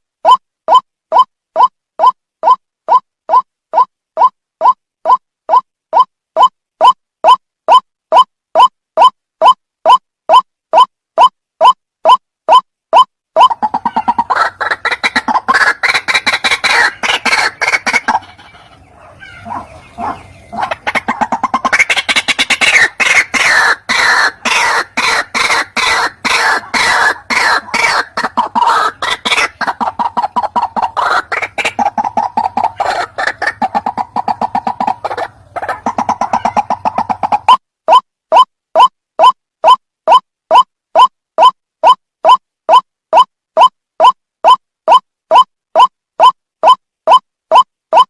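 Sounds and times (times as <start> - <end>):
waterhen calling: 13.4 - 37.6.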